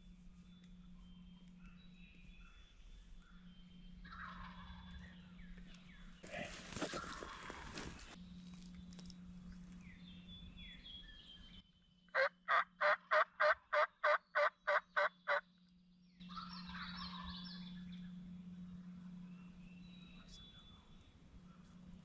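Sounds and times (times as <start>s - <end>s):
small birds chirping: 0.0s - 12.2s, 14.0s - 22.0s
turkey yelping: 4.1s - 4.9s, 12.2s - 15.4s.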